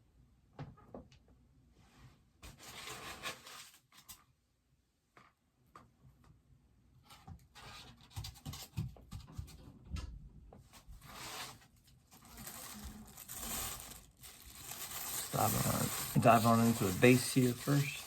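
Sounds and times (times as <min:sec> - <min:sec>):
cardboard and plastic rustling: 0:10.6 - 0:18.0.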